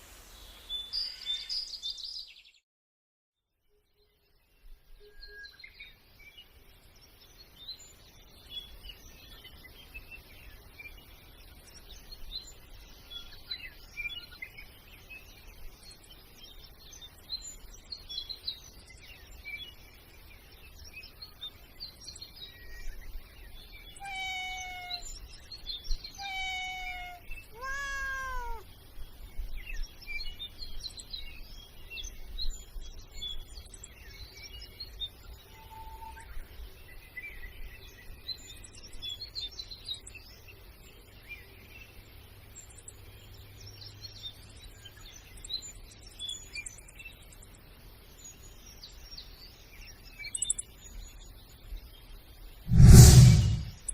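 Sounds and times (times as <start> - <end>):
small birds chirping: 4.6 - 35.5, 36.2 - 53.0
cat meowing: 24.0 - 25.1, 26.2 - 28.6.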